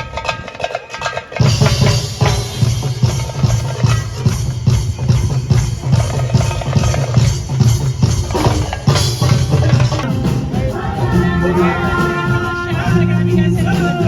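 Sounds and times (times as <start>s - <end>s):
fast drumming: 0.0s - 14.0s
held pitched backing music: 0.0s - 14.0s.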